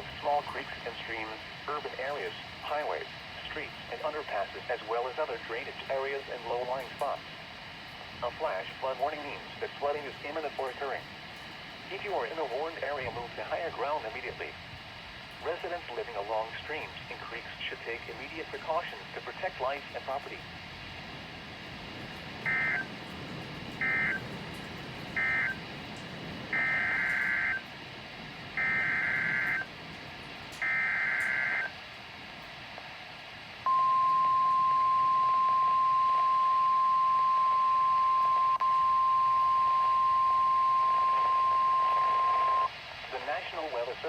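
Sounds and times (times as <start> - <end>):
steady warning alarm tone: 22.2 - 27.8, 28.4 - 29.8, 30.5 - 31.8, 33.6 - 42.7
buzzy two-tone data bursts: 28.6 - 29.7.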